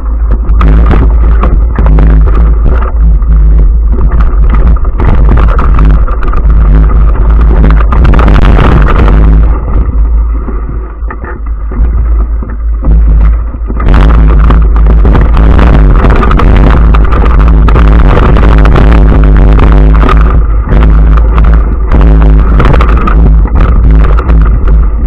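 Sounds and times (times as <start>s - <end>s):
off-road vehicle engine: 12.8s - 25.0s.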